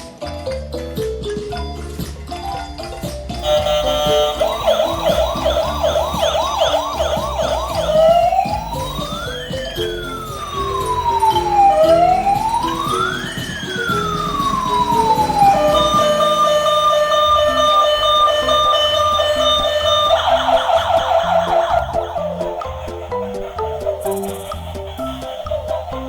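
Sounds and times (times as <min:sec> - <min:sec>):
toy ambulance siren: 0:02.4 - 0:26.0.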